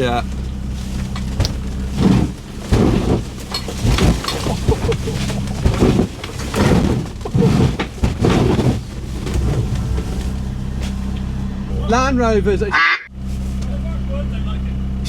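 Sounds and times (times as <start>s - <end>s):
knocks and clatters from suspension: 0.0s - 11.4s
vehicle engine running: 0.0s - 15.0s.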